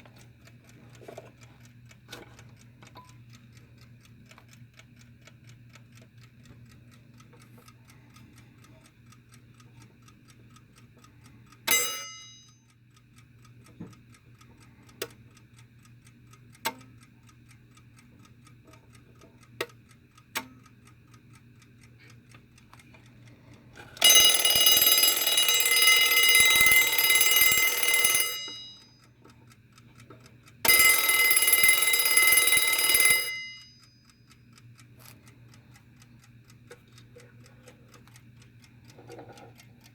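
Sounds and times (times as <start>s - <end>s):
alarm clock ticking: 0.0s - 39.9s
alarm bell ringing: 11.7s - 12.6s, 24.0s - 29.0s, 30.7s - 34.2s.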